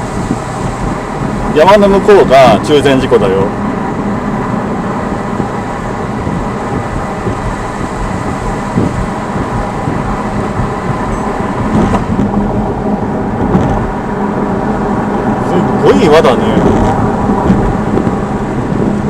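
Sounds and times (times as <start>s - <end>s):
car engine hum: 0.0s - 19.0s
tyre rumble on road: 6.2s - 14.8s.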